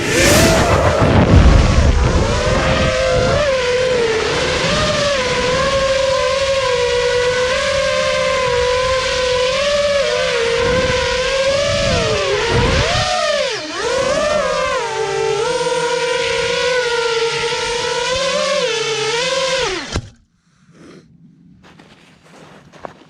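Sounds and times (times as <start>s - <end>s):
wind rumble on microphone: 0.0s - 18.3s
drone motors whining: 0.0s - 20.4s.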